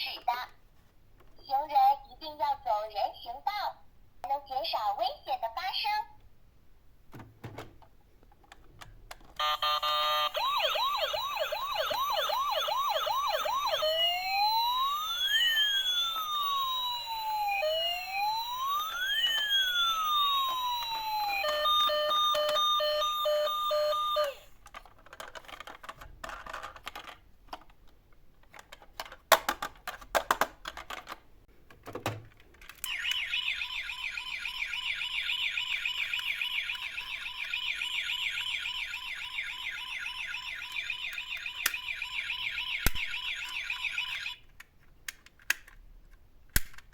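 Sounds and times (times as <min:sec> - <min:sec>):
electronic toy siren: 0:09.4 - 0:24.5, 0:32.8 - 0:44.4
small clicks and knocks: 0:24.6 - 0:32.9, 0:44.5 - 0:46.9.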